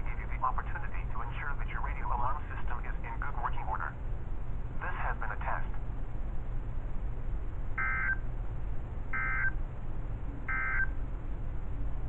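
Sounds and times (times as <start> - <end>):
radio hiss and hum: 0.0 - 4.0, 4.7 - 5.9
digital data tone bursts: 7.8 - 8.2, 9.2 - 9.6, 10.5 - 10.9.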